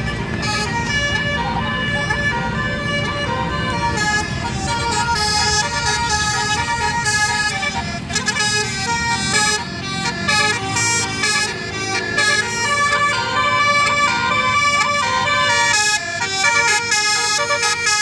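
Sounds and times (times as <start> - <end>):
low bus engine rumble: 0.0 - 18.0
musical air horn tune: 0.0 - 18.0.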